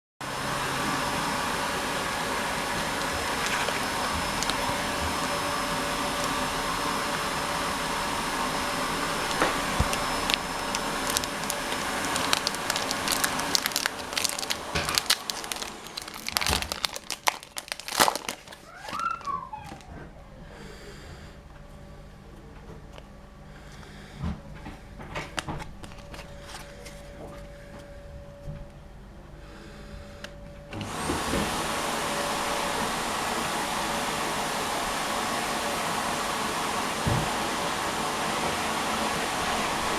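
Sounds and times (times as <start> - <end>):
foil wrappers crinkling and tearing: 3.0 - 5.0, 9.2 - 20.0, 25.4 - 27.1.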